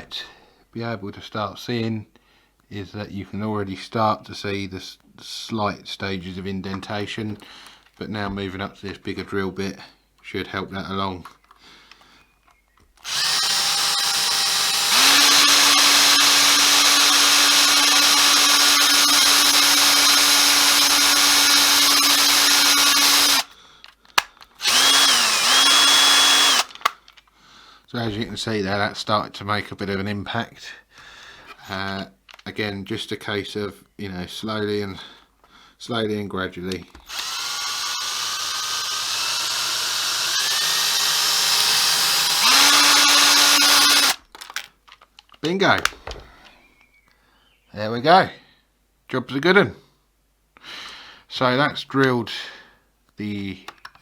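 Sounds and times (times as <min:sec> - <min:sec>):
small electric drill drilling: 0:13.0 - 0:23.5, 0:24.6 - 0:27.0, 0:37.0 - 0:44.2.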